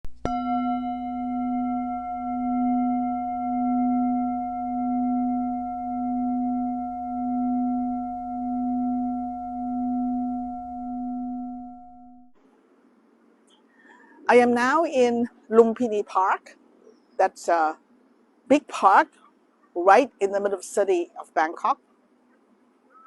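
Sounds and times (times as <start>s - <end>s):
singing bowl ringing: 0.3s - 12.4s.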